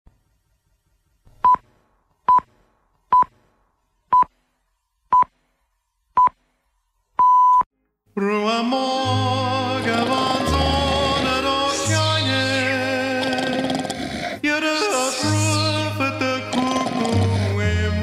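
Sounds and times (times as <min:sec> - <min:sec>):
music: 0:08.1 - 0:18.0.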